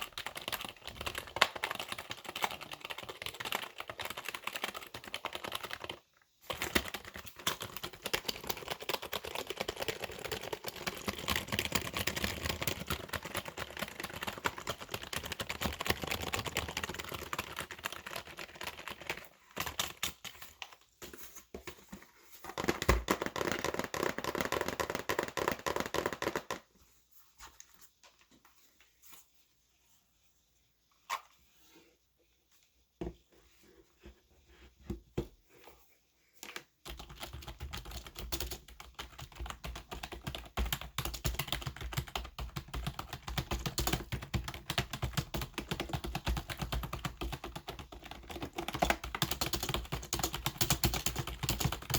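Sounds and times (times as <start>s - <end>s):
fast typing on keyboard: 0.0s - 20.5s, 22.6s - 26.6s, 36.9s - 51.9s.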